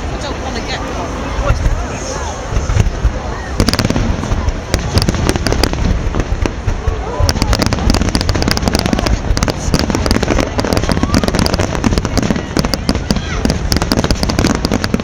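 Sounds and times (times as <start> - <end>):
fireworks crackles and bangs: 0.0 - 15.0
steady low rumble: 0.0 - 15.0.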